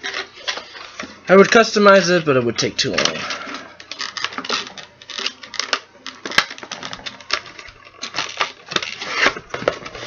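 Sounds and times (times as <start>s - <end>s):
plastic toy packaging handled: 0.0s - 10.0s.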